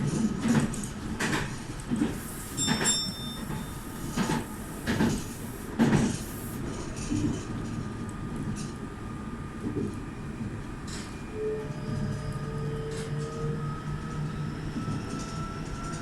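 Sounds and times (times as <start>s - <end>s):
electric train rumble: 0.0s - 16.0s
high ringing tone: 2.6s - 4.0s.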